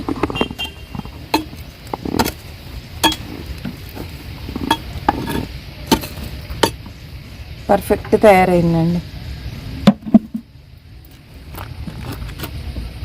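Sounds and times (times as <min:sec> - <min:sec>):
clinks and scrapes in clay pot: 0:00.0 - 0:02.4, 0:03.0 - 0:06.9, 0:11.5 - 0:12.6.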